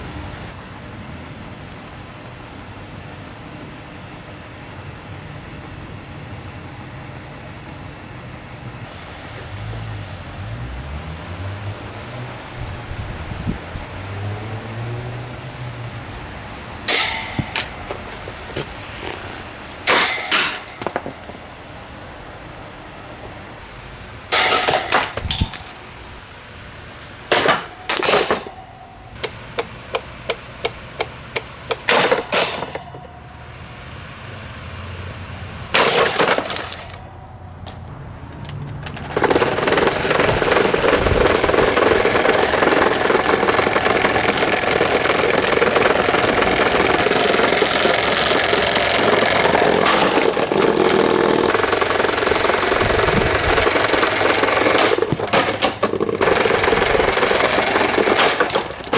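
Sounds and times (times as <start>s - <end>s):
loud cracking crashes: 15.9s - 22.0s, 35.6s - 37.1s, 38.6s - 58.9s
loud rattling clatter: 16.0s - 18.6s, 35.7s - 58.9s
rapid clicks: 38.3s - 58.9s.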